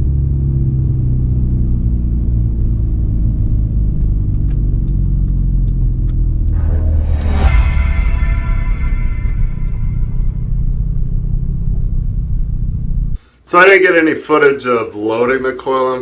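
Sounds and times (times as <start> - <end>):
rising rushing sound: 6.5 - 11.2
diesel truck engine rumbling: 10.2 - 13.2.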